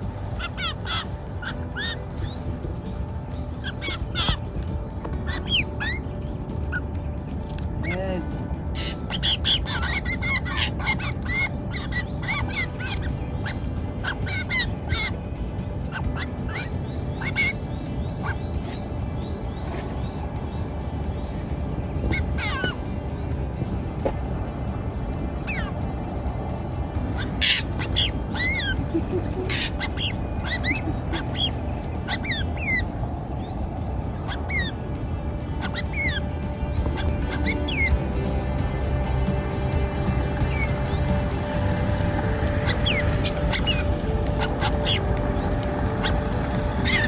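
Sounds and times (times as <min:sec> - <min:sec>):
birds calling harsh notes and whistles: 0:00.0 - 0:47.0.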